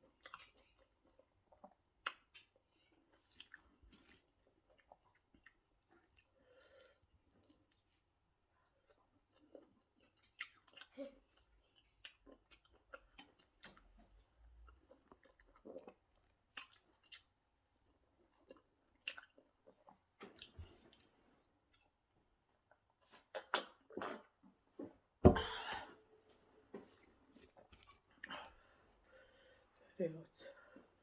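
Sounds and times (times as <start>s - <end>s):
wet chewing: 0.1s - 8.0s, 8.6s - 17.5s, 18.2s - 22.0s.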